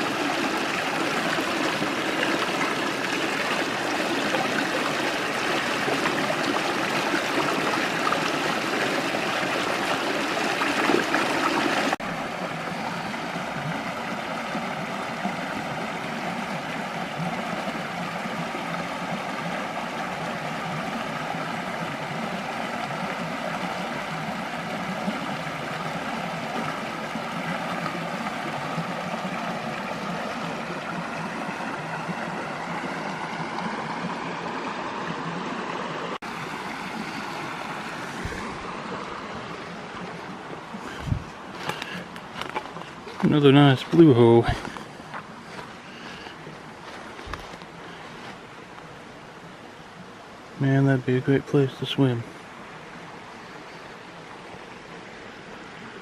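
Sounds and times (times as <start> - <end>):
creek water flowing: 0.0 - 56.0.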